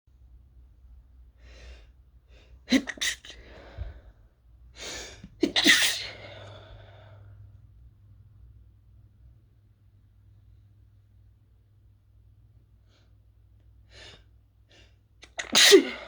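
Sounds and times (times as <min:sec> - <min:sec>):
person sneezing: 0:02.7 - 0:03.5, 0:04.8 - 0:06.6, 0:15.2 - 0:16.0.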